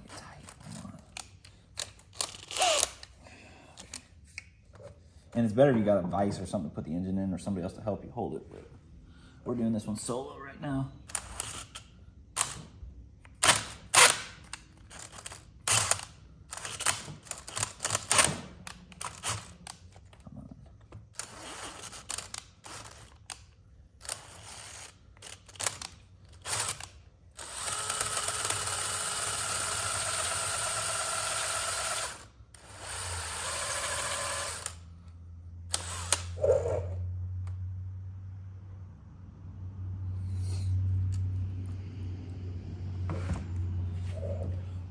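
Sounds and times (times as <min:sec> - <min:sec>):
electric drill motor running: 0:02.2 - 0:03.1, 0:26.4 - 0:34.8, 0:35.7 - 0:36.4.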